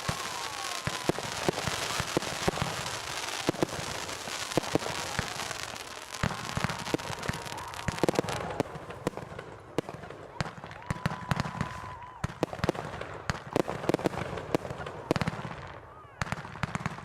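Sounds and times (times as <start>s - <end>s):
firework whistling: 0.0s - 9.0s
fireworks crackling and popping: 0.0s - 17.0s.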